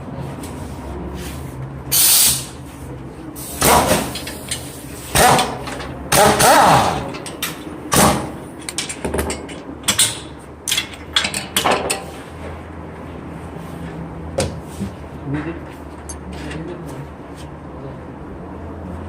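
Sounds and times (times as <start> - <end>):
metal tools clanking: 4.1 - 12.2.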